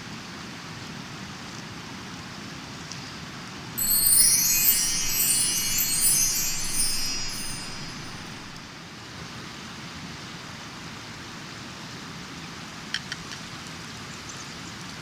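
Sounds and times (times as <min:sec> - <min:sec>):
shimmering chime with falling sweeps: 0:03.8 - 0:08.6.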